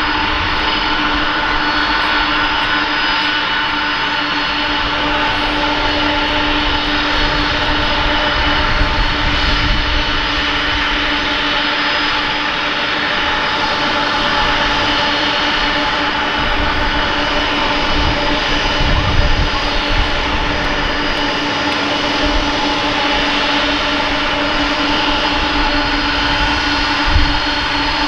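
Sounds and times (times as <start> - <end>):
jet engines whining: 0.0 - 28.0.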